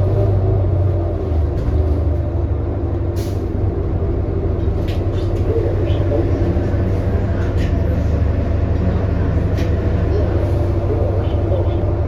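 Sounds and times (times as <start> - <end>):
bus engine drone: 0.0 - 12.0.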